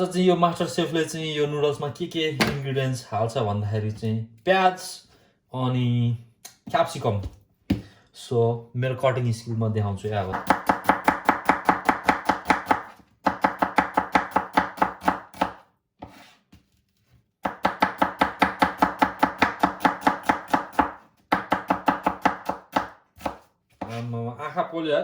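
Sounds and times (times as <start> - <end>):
knife chopping on cutting board: 10.3 - 16.4, 17.4 - 24.0.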